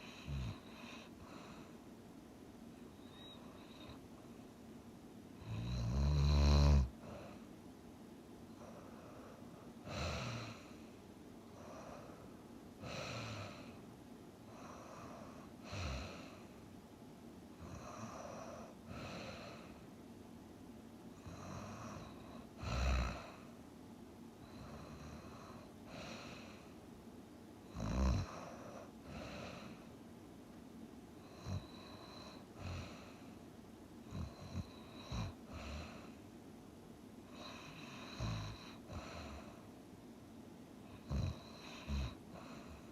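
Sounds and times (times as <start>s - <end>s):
person snoring: 5.4s - 7.3s, 27.7s - 29.8s.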